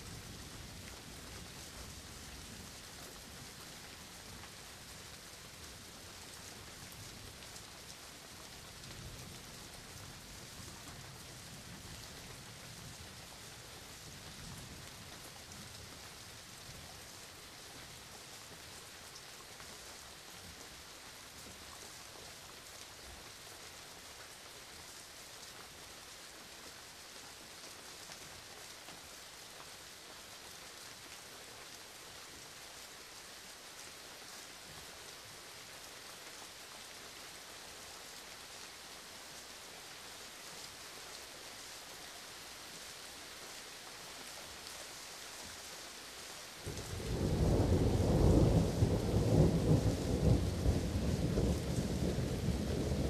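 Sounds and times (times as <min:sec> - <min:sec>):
steady rain falling: 0:00.0 - 0:53.0
low rumble of thunder: 0:46.7 - 0:53.0.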